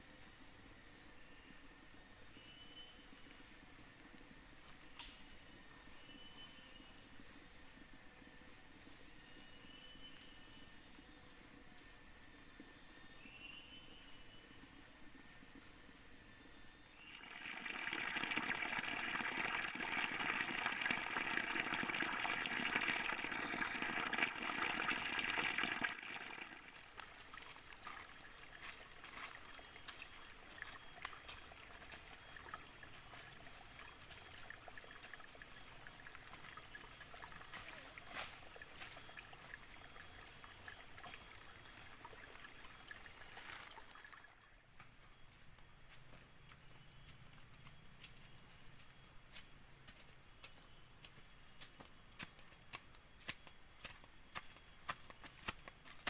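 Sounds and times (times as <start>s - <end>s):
running water: 17.0s - 44.5s.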